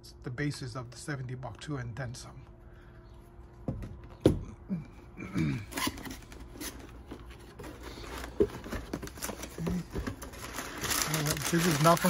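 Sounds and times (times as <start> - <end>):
packaging rustling: 5.8 - 12.0.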